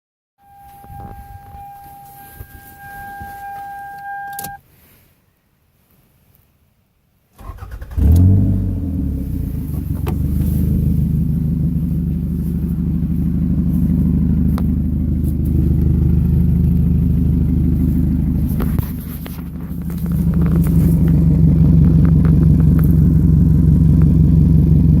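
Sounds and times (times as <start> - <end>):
electronic warning tone: 0.4 - 4.6
car engine starting: 7.4 - 25.0
engine idling with exhaust rumble: 8.6 - 25.0.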